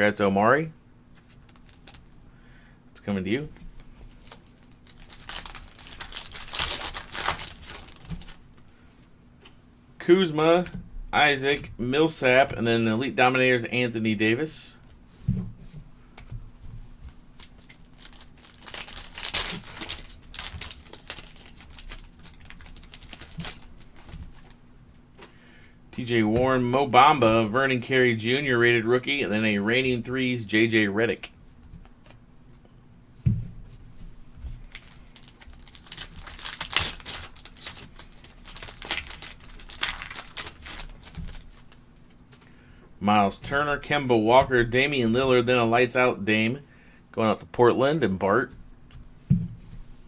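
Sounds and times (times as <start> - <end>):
foil wrapper tearing and crinkling: 1.4 - 2.1, 4.2 - 8.4, 17.4 - 24.6, 34.6 - 41.8.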